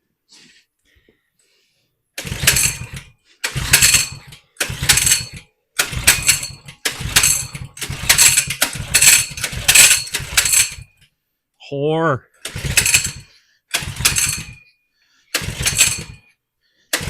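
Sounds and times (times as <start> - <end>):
small engine turning over: 2.2 - 11.0, 12.4 - 14.7, 15.3 - 16.3
recoil starter pulls: 2.2 - 11.1, 12.4 - 16.3.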